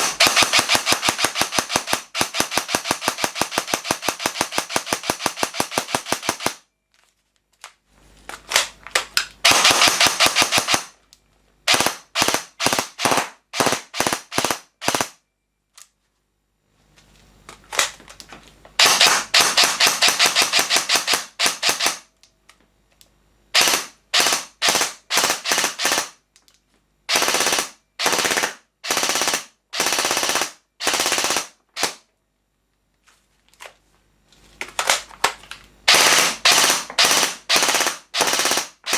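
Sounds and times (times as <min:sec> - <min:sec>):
airsoft gun firing bursts: 0:00.0 - 0:06.6, 0:09.4 - 0:10.9, 0:11.7 - 0:15.2, 0:18.8 - 0:22.1, 0:23.6 - 0:26.2, 0:27.1 - 0:32.0, 0:35.9 - 0:38.9.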